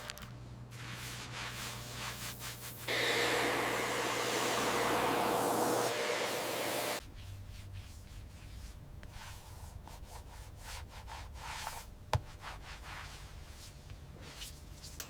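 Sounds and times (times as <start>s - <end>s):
loud steady hiss: 2.8s - 7.0s.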